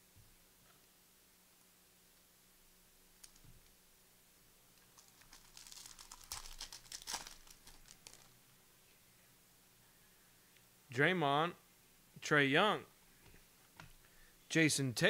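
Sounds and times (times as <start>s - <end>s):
wrapper crinkling and tearing: 4.8s - 8.4s.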